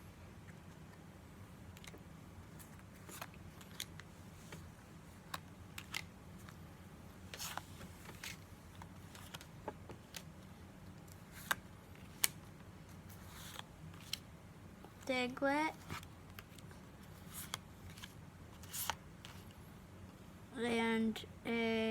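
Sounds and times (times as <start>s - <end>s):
trading cards flipped through: 2.6s - 4.6s, 5.3s - 6.6s, 7.3s - 10.3s, 11.1s - 12.4s, 13.1s - 14.2s, 15.8s - 19.5s.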